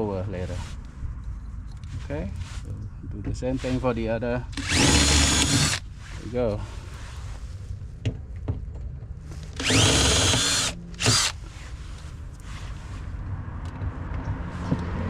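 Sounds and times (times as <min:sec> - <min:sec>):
electric drill whining: 0:04.6 - 0:05.8, 0:09.6 - 0:11.4.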